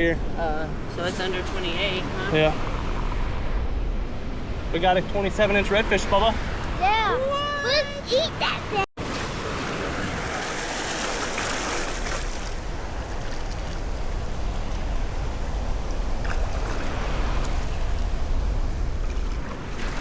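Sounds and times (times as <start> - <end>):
wind rumbling on microphone: 0.0 - 7.1, 9.2 - 20.0
surf washing on beach: 7.7 - 20.0.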